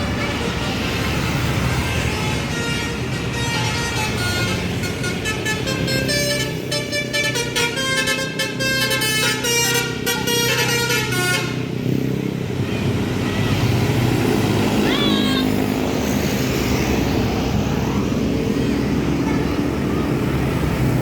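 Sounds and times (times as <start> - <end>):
bus engine running: 0.0 - 21.0
musical air horn playing tune: 1.8 - 11.8.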